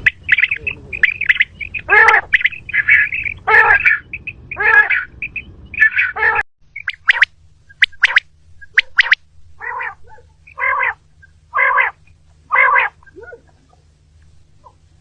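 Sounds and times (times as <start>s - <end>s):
quail calling: 0.0s - 15.0s
short sharp chirps: 6.8s - 9.2s.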